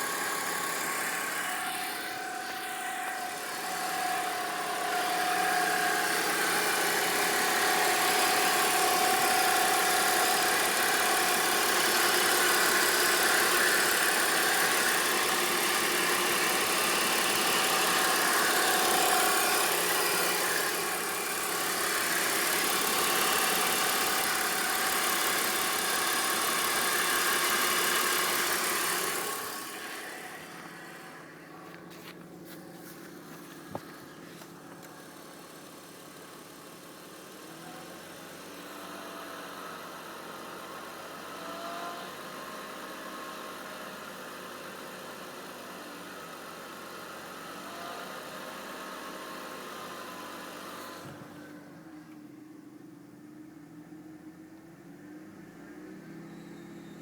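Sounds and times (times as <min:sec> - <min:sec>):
steady whining whistle: 0:00.0 - 0:31.2
car engine running: 0:00.0 - 0:40.9.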